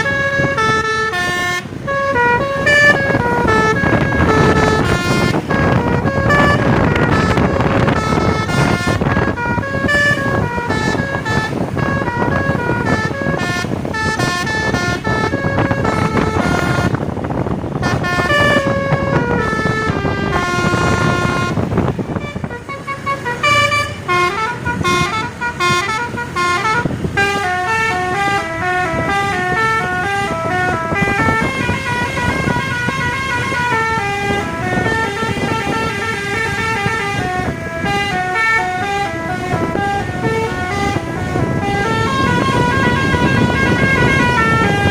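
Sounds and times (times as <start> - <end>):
engines and traffic: 0.0 - 44.9
multi-tone bus horn melody: 0.0 - 44.9.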